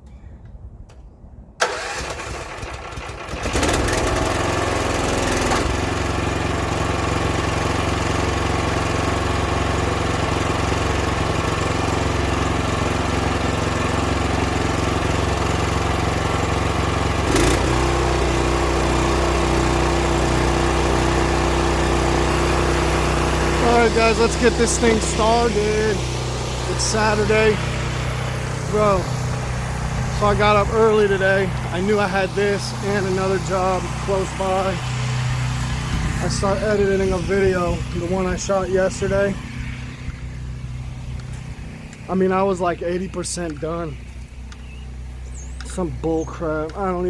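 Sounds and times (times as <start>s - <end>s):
gas engine starting and running: 1.6s - 47.0s
steady hum: 20.0s - 46.9s.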